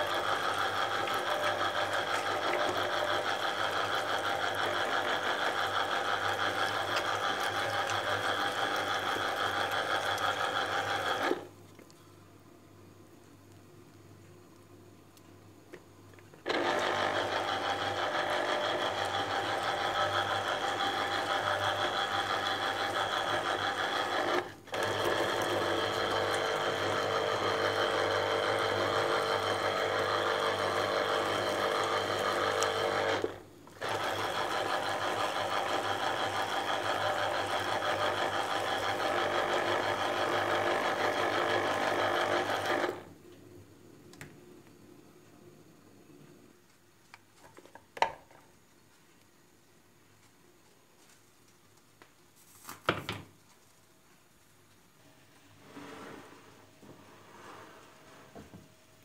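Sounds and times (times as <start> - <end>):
electric blender motor running: 0.0 - 11.5, 16.4 - 43.1.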